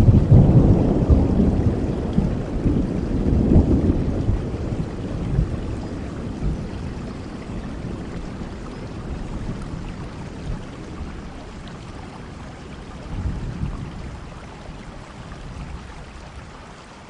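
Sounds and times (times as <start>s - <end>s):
low thunder rumble: 0.0s - 16.4s
steady rainfall: 0.0s - 17.0s.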